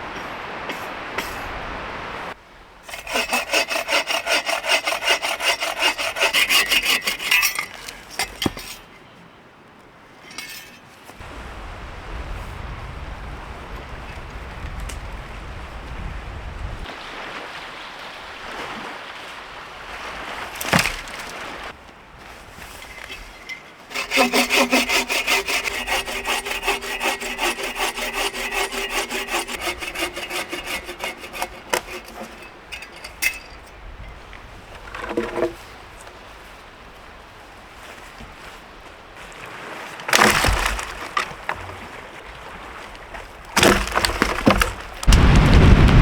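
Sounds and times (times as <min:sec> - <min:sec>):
hand saw cutting wood: 0:02.9 - 0:08.8, 0:20.5 - 0:21.3, 0:22.6 - 0:33.8, 0:40.1 - 0:41.6, 0:43.6 - 0:45.2.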